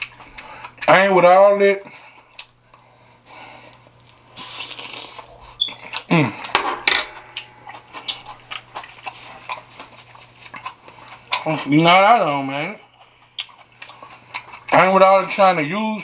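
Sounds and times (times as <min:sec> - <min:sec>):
person chewing: 0:00.0 - 0:00.9, 0:02.0 - 0:03.0, 0:03.6 - 0:11.8, 0:12.7 - 0:14.9.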